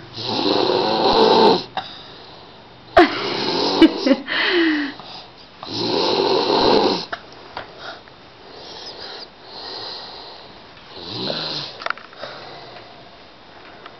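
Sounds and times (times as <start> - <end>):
loud rattling snore: 0.1 - 1.7, 5.7 - 7.1, 10.9 - 11.9
soft breathing: 4.3 - 5.5, 7.7 - 10.7, 11.6 - 13.9.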